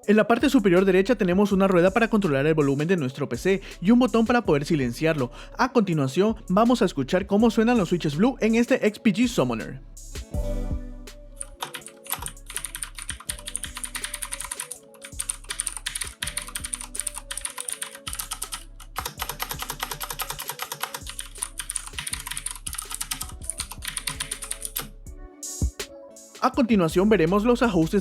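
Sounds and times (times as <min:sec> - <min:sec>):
clicky mechanical keyboard typing: 0:11.5 - 0:24.9.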